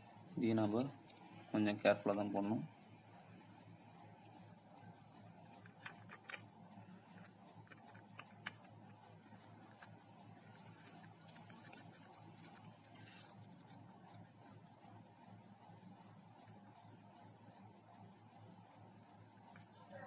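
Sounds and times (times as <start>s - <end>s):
low steady hum: 0.0s - 20.0s
light rubbing of parts: 0.1s - 20.0s
small plastic parts clicking: 5.6s - 6.5s, 7.1s - 9.0s.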